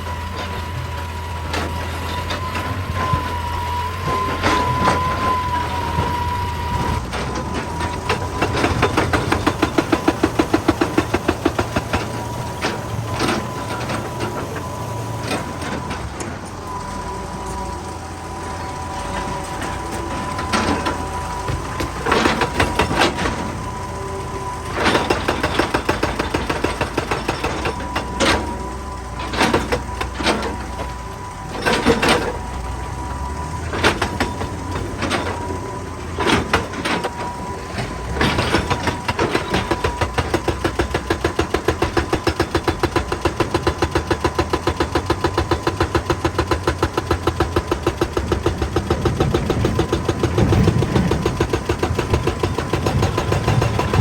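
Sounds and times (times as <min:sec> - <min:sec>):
hydraulic rock breaker hammering: 0:00.0 - 0:16.4, 0:18.0 - 0:54.0
excavator diesel engine: 0:00.0 - 0:54.0.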